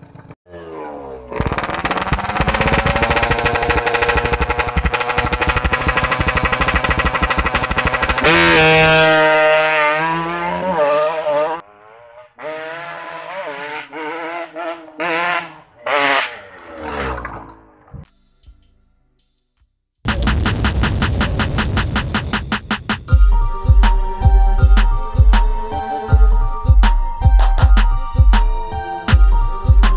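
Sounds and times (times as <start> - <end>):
two-stroke motorcycle engine revving: 0.0 - 18.0.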